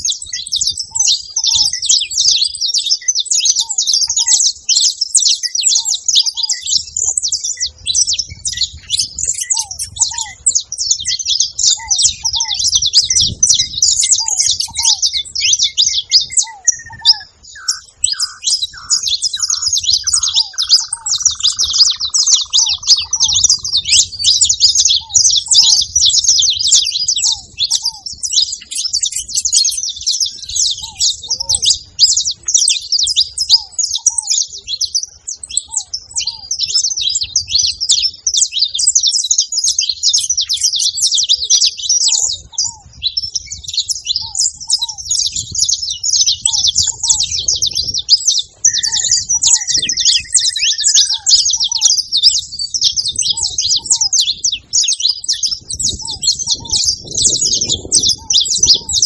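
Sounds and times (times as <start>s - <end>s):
finches chirping in chorus: 0.0s - 59.0s.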